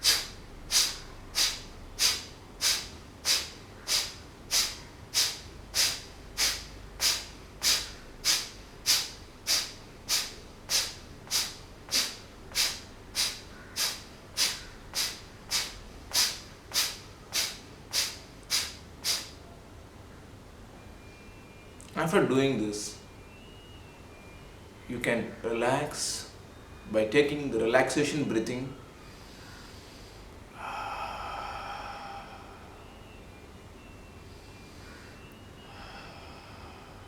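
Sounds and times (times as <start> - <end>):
forceful nasal exhalations: 0.0 - 19.4, 29.1 - 33.0.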